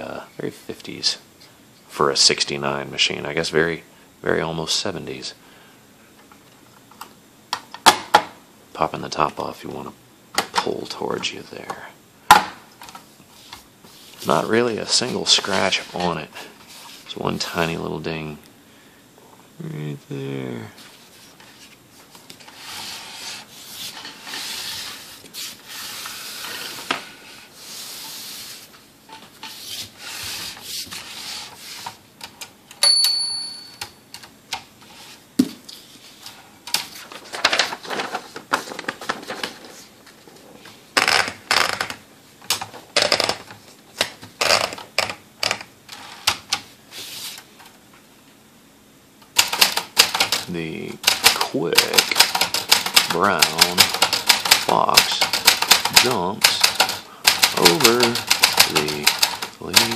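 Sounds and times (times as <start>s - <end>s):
typewriter rubbing and sliding: 13.3s - 17.2s, 22.4s - 28.8s, 29.4s - 32.0s, 45.9s - 47.4s
typewriter bell ping: 32.8s - 33.9s
typewriter key clacks: 51.0s - 59.9s.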